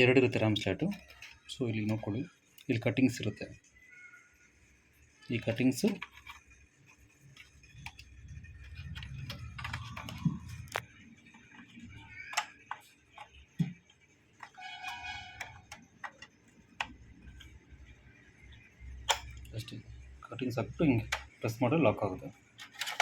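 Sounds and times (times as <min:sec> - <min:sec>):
plastic clicks and taps: 0:14.4 - 0:17.6.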